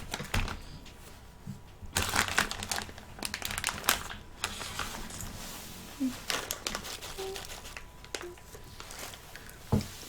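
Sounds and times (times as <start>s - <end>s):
plastic snack packet crinkling: 0.0s - 0.7s, 1.9s - 5.2s, 6.0s - 9.6s.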